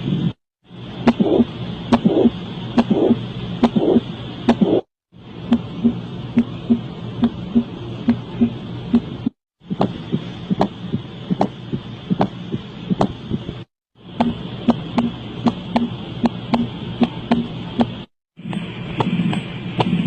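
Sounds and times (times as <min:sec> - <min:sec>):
heartbeat lub-dub: 0:01.1 - 0:04.9, 0:05.5 - 0:13.6.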